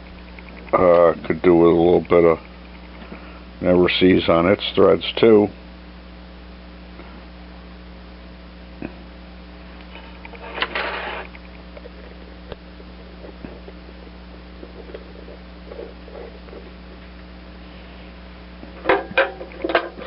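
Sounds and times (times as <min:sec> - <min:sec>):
electrical hum: 0:00.0 - 0:20.0
scraping rustle: 0:10.0 - 0:12.3.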